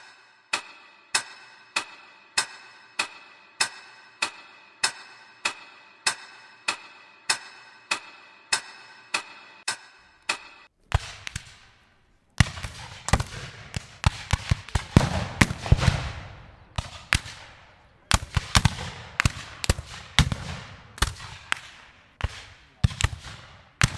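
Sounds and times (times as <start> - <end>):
fireworks bangs and crackle: 10.9 - 11.7, 12.4 - 23.9.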